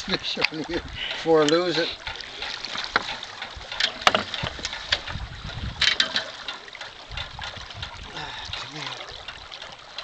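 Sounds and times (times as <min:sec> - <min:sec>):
water splashing: 0:00.0 - 0:10.0
sharp knocks and clicks: 0:01.4 - 0:08.0.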